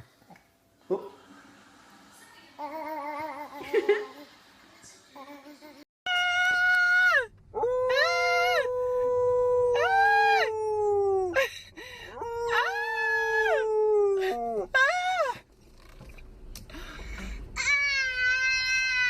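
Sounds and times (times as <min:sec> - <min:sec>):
dog howling: 0:12.2 - 0:15.4.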